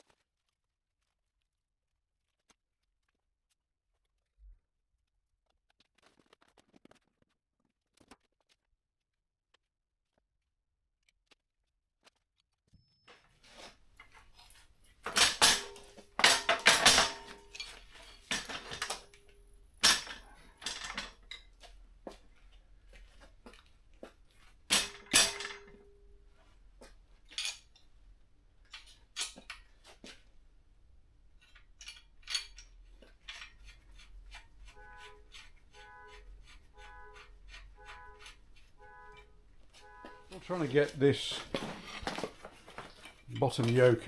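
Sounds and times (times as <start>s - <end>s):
metal parts and tools clanking: 13.5s - 22.3s, 24.6s - 26.2s, 26.8s - 27.9s, 28.6s - 30.2s, 31.4s - 44.0s.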